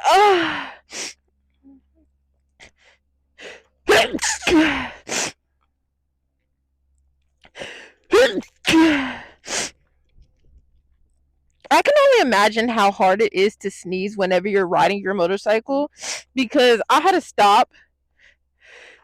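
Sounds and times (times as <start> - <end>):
woman sneezing: 3.9 - 5.4, 8.1 - 9.7
faint breaths: 17.7 - 19.0.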